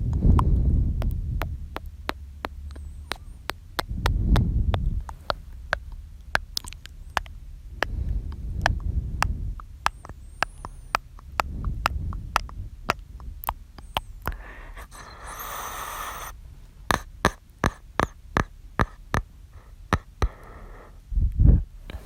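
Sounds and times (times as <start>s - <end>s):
wet mouth clicks and pops: 0.0s - 16.3s, 16.9s - 19.3s
breathy hiss: 14.3s - 16.4s, 19.5s - 21.0s.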